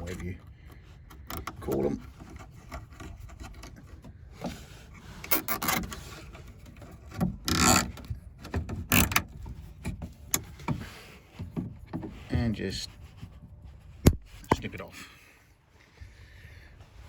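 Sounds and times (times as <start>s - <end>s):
cable tie zipping: 7.5s - 7.9s
handling rubs: 8.9s - 16.0s.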